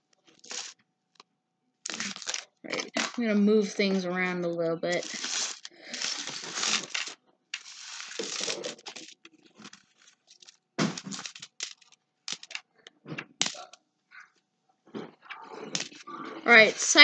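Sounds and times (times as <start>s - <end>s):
coins and paper wrappers crinkling: 0.2s - 0.8s, 1.9s - 12.6s, 15.7s - 17.0s.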